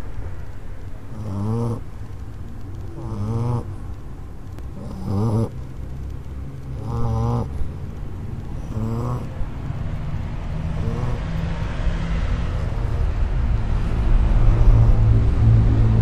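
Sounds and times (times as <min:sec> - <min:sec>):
dog snoring: 0:01.1 - 0:01.9, 0:03.0 - 0:03.8, 0:04.7 - 0:05.6, 0:06.7 - 0:07.7, 0:08.6 - 0:09.5, 0:10.6 - 0:11.6, 0:12.3 - 0:13.2, 0:14.3 - 0:15.2.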